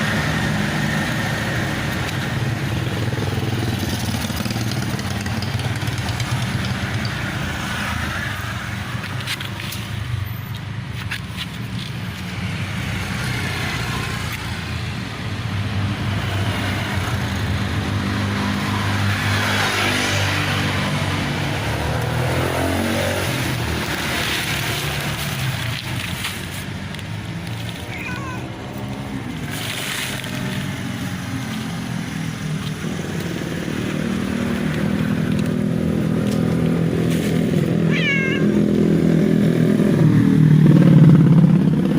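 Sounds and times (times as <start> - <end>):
motorcycle engine running: 1.5 - 8.0.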